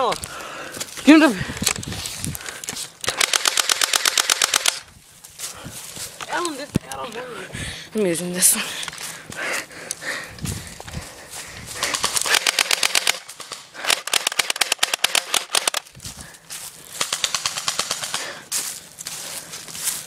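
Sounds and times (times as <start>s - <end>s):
airsoft gun firing bursts: 3.0s - 4.8s, 11.8s - 15.8s, 17.0s - 18.4s.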